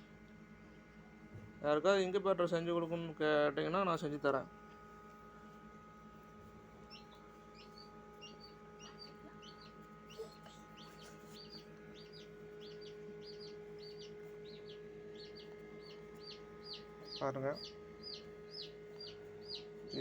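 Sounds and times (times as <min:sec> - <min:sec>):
electrical hum: 0:00.0 - 0:20.0
chicks peeping: 0:06.8 - 0:20.0.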